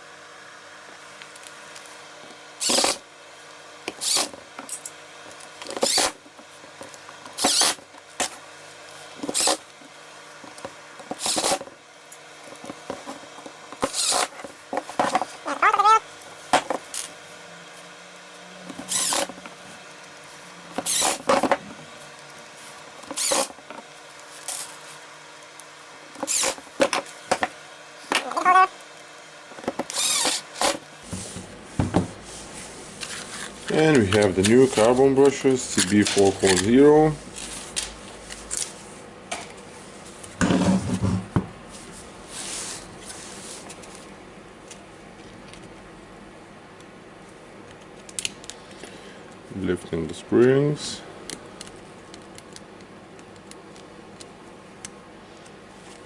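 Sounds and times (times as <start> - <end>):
parts clattering: 12.5 - 17.2, 18.7 - 25.0, 26.1 - 28.8, 29.5 - 31.0
scraping rustle: 12.5 - 25.1, 26.2 - 28.8.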